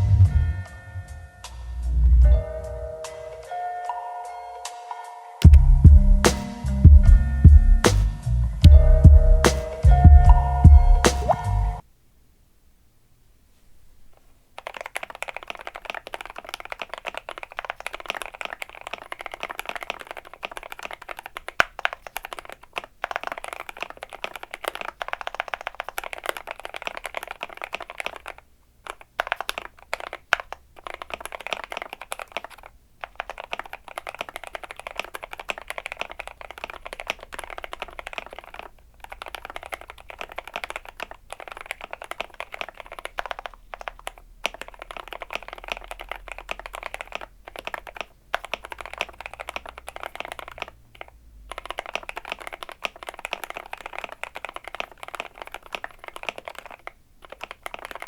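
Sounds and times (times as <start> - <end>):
mechanical keyboard typing clacks: 14.6 - 58.0.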